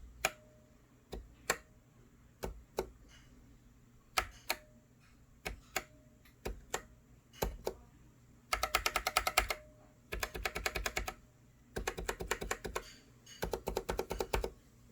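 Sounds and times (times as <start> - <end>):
mechanical keyboard typing: 4.1 - 4.6, 5.4 - 7.8, 8.5 - 11.2, 11.8 - 14.6.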